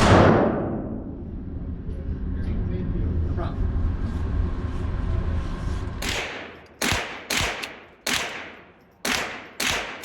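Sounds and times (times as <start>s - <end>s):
pistol shots: 6.0s - 10.0s.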